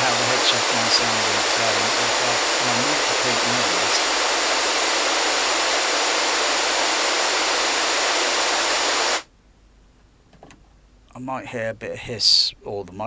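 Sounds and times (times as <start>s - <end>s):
pink noise hiss: 0.0s - 9.3s
faint background hiss: 0.0s - 13.0s.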